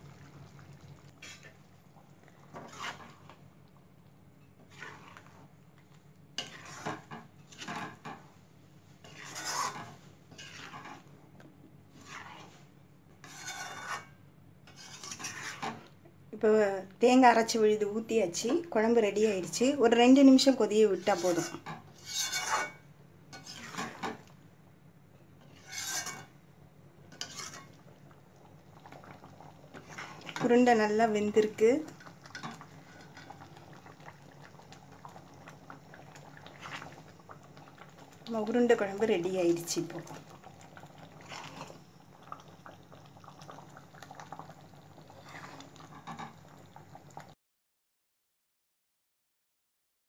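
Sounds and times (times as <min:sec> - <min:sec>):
curry bubbling in a pan: 0:00.0 - 0:16.1, 0:17.8 - 0:24.5, 0:25.4 - 0:47.4
metal ladle scraping in pot: 0:01.1 - 0:01.6, 0:02.4 - 0:03.4, 0:04.5 - 0:05.5, 0:06.4 - 0:08.2, 0:09.0 - 0:11.1, 0:11.9 - 0:15.9, 0:20.7 - 0:24.2, 0:25.4 - 0:26.4, 0:27.1 - 0:27.8, 0:29.7 - 0:33.5, 0:41.2 - 0:41.8, 0:45.2 - 0:46.4.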